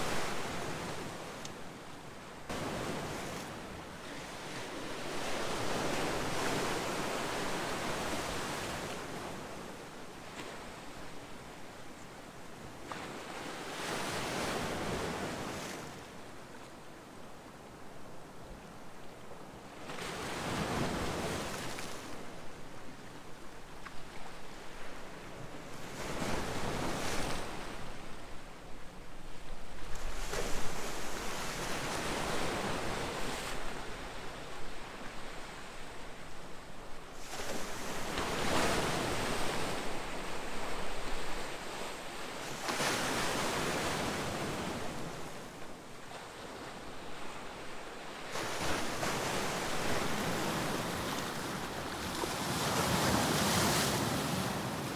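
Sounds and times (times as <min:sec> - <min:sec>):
waves breaking on shore: 0:48.3 - 0:54.9.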